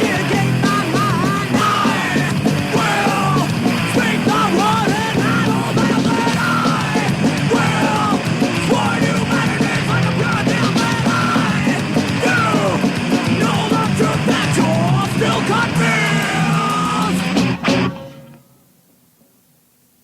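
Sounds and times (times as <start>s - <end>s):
thrash metal band playing: 0.0s - 18.6s
person shouting vocals: 13.4s - 17.3s.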